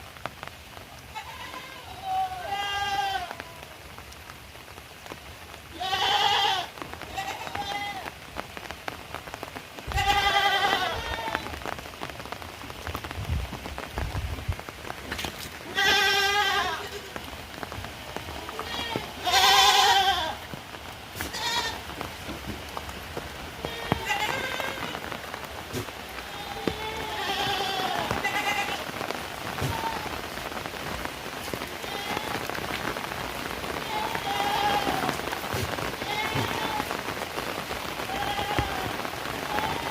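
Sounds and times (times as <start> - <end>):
heavy rain falling: 0.0 - 39.9
goat bleating: 1.1 - 3.6, 5.7 - 8.1, 9.9 - 11.5, 15.6 - 17.3, 18.4 - 20.5, 21.2 - 21.9, 23.6 - 30.2, 31.4 - 32.5, 33.8 - 37.0, 38.0 - 39.9.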